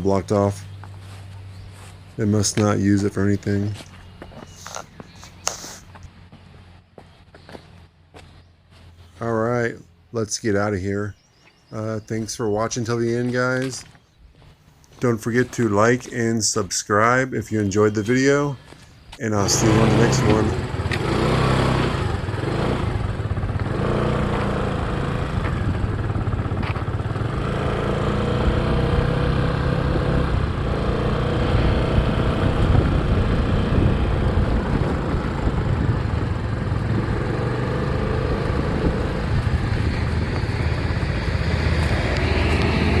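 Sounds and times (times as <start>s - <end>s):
wind and road noise: 0.0s - 43.0s
motorbike engine running: 19.4s - 43.0s.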